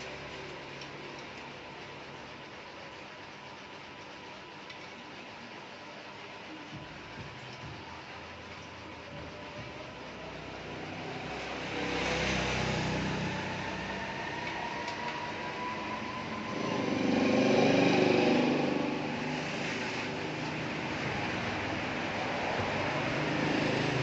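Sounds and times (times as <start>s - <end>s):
vehicles passing by: 10.1s - 24.0s.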